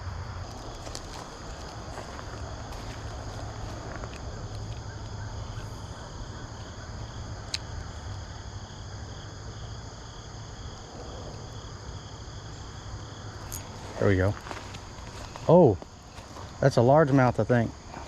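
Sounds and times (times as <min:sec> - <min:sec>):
insect chorus: 0:00.0 - 0:18.0
low rumble: 0:10.5 - 0:15.4.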